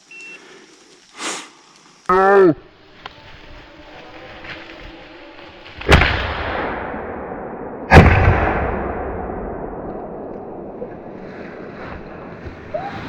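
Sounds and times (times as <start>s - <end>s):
gunshots with rolling echo: 5.9s - 10.7s.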